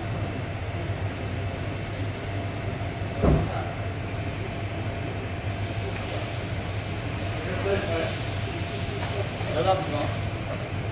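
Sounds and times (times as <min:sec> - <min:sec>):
steady low hum: 0:00.0 - 0:10.9.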